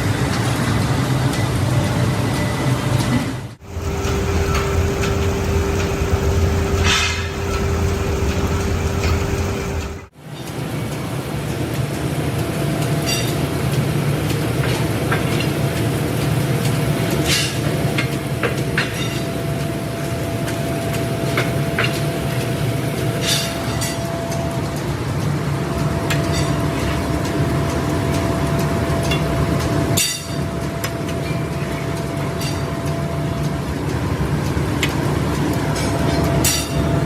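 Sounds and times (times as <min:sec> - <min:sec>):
machinery whine: 0:00.0 - 0:10.1
factory machinery hum: 0:00.0 - 0:37.0
higher steady tone: 0:03.6 - 0:10.1.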